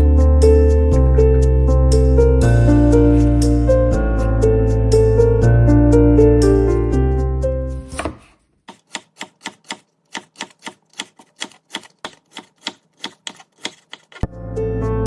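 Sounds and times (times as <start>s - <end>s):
background music: 0.0s - 8.2s, 14.2s - 15.0s
knife chopping on cutting board: 7.9s - 14.2s.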